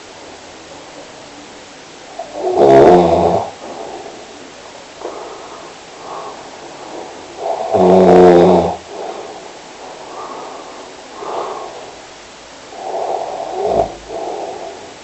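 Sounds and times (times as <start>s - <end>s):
person snoring: 2.2s - 4.2s, 5.0s - 12.0s, 12.7s - 14.9s
breathing in and out: 3.5s - 15.0s.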